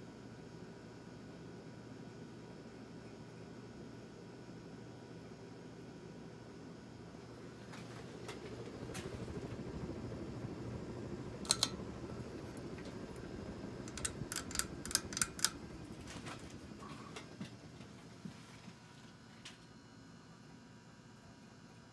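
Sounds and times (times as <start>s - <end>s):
ceiling fan whooshing: 7.2s - 19.4s
sharp clicks: 11.4s - 17.3s.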